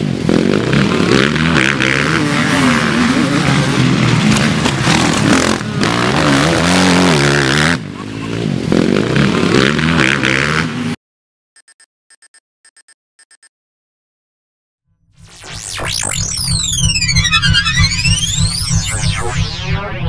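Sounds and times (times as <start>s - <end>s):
motorcycle engine revving: 0.0s - 11.0s, 15.8s - 19.7s.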